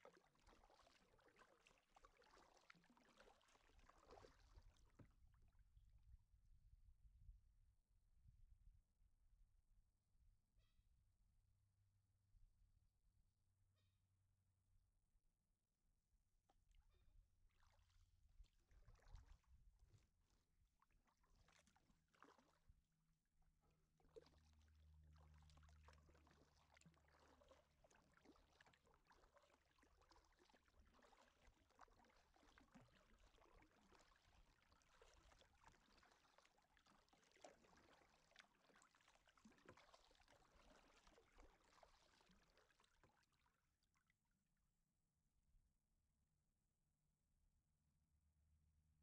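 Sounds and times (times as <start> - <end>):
water splashing and dripping: 0.0 - 5.1, 24.0 - 43.2
kayak paddle dipping: 0.0 - 5.5, 16.5 - 44.2.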